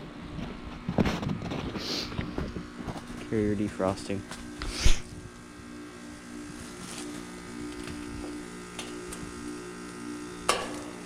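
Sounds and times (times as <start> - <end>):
heat pump humming: 0.0 - 11.0.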